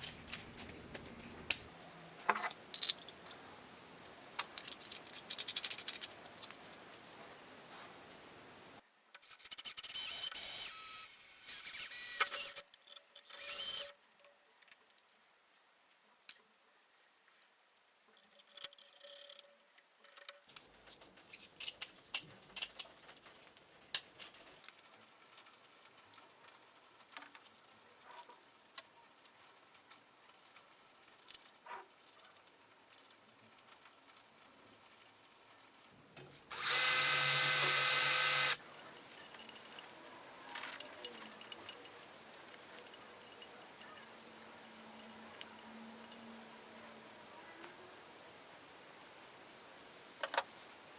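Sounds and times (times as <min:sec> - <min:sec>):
tools and parts clicking: 0:02.3 - 0:03.4, 0:04.4 - 0:06.6, 0:18.1 - 0:20.6, 0:36.5 - 0:46.3
handheld power tool bursts: 0:09.8 - 0:12.6, 0:13.3 - 0:13.9, 0:36.5 - 0:38.6
motor humming: 0:36.5 - 0:38.6.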